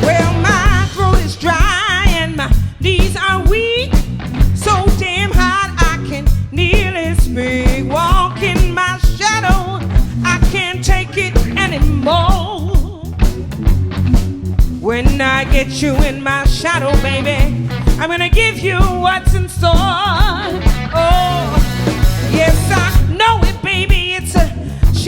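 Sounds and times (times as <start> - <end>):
blues-rock band playing: 0.0 - 25.0
lead melody with heavy vibrato: 12.7 - 23.4.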